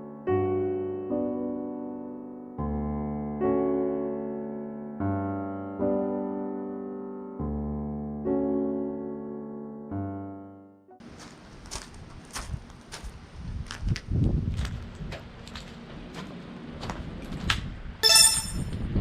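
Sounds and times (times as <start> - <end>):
slow electric piano chords: 0.0 - 11.0.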